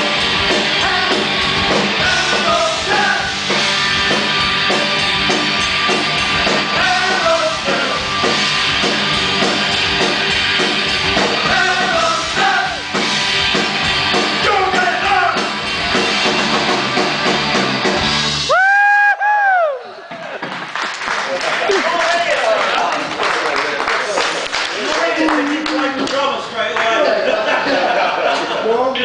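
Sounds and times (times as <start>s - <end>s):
punk rock band playing live: 0.0s - 18.6s
man singing: 2.0s - 3.4s, 6.7s - 8.1s, 11.4s - 12.8s, 14.4s - 15.5s.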